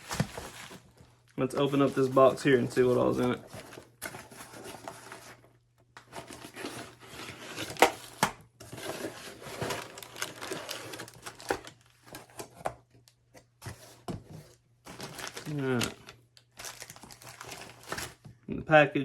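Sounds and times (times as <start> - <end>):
packaging rustling and crinkling: 0.0 - 18.3.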